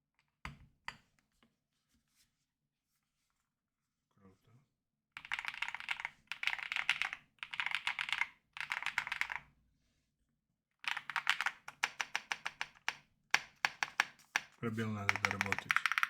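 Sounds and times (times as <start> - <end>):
mechanical keyboard typing: 5.2 - 9.4, 10.8 - 16.0.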